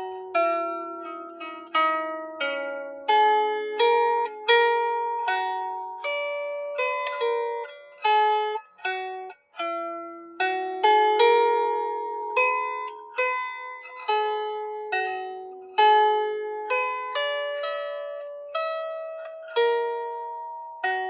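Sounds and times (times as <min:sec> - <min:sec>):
lyre harp plucked notes: 0:00.0 - 0:21.0.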